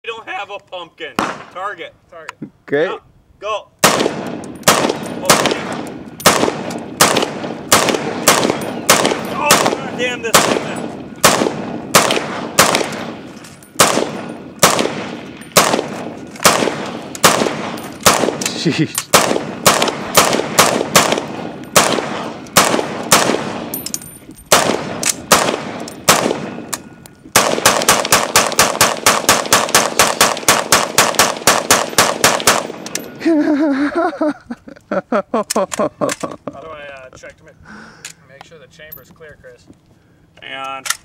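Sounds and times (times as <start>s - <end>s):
rifle gunshots: 1.2s - 1.5s, 3.8s - 23.9s, 24.5s - 26.7s, 27.3s - 32.9s.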